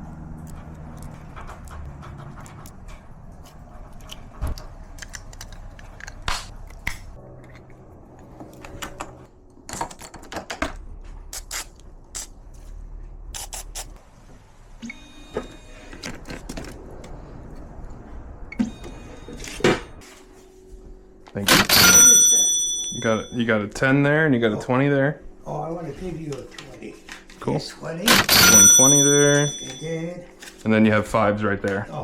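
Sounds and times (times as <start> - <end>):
brief metallic ringing: 21.6 - 23.4, 28.1 - 29.9.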